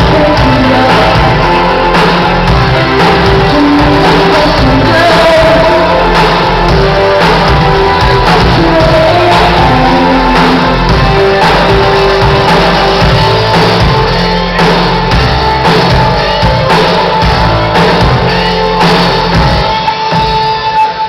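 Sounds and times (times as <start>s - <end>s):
person singing: 0.0s - 14.1s
live pop band music: 0.0s - 21.0s.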